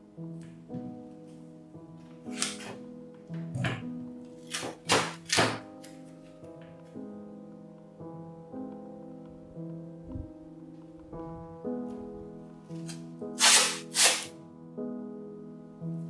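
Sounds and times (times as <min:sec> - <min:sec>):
soft piano music: 0:00.0 - 0:16.0
tape tearing off a roll: 0:02.3 - 0:02.8, 0:12.8 - 0:14.3.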